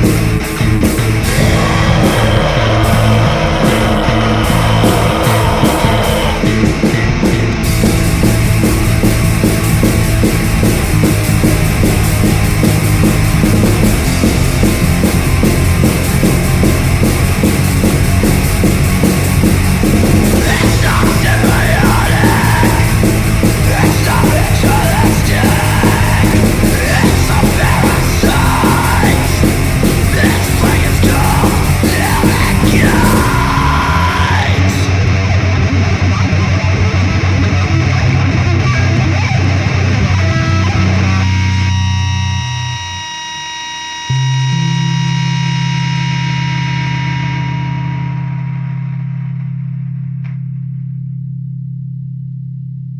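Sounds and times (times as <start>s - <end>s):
punk rock music: 0.0s - 50.9s
person yelling vocals: 1.2s - 6.6s, 20.2s - 35.0s.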